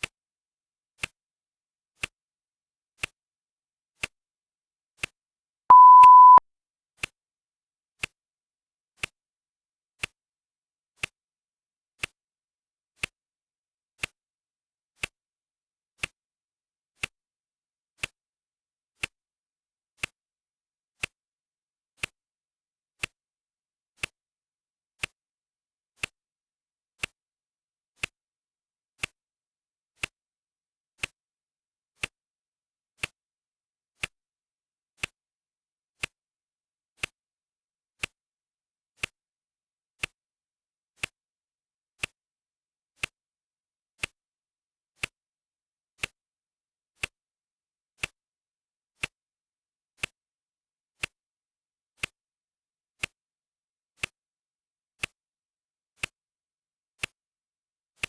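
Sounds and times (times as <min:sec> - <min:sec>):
high-pitched electronic beep: 0:05.7 - 0:06.4.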